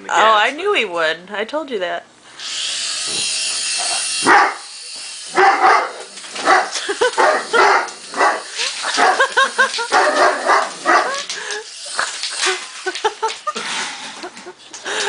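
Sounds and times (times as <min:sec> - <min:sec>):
toy helicopter motor whine: 0:02.4 - 0:13.5
dog barking and yipping: 0:04.2 - 0:04.6, 0:05.3 - 0:11.2.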